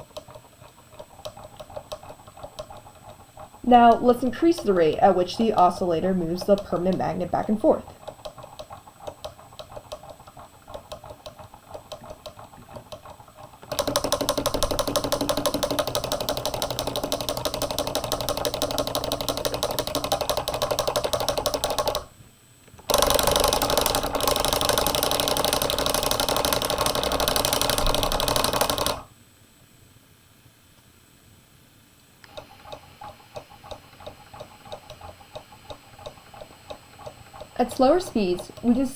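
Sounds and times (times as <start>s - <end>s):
magnet rattling in housing: 0.0s - 22.1s, 22.8s - 29.1s.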